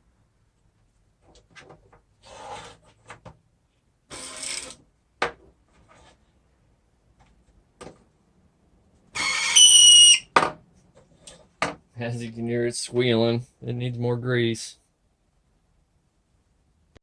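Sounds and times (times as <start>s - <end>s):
rubbing and scraping: 1.2s - 3.2s.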